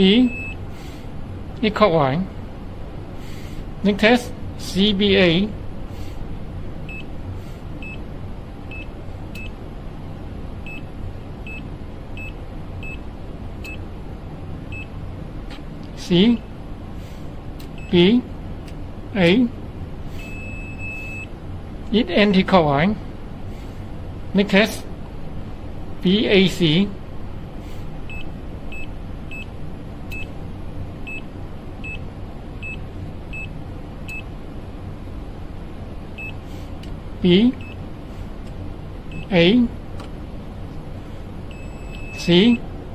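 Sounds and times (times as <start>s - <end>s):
steady low hum: 0.0s - 42.9s
multimeter buzzer short high beeps: 20.2s - 21.3s, 41.5s - 42.6s.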